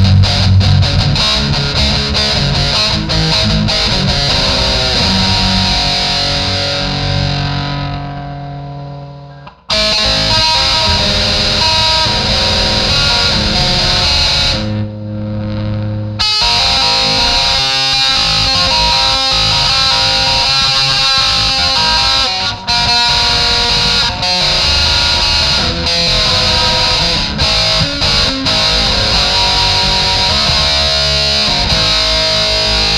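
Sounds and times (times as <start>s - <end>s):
distorted electric guitar: 0.0s - 32.9s.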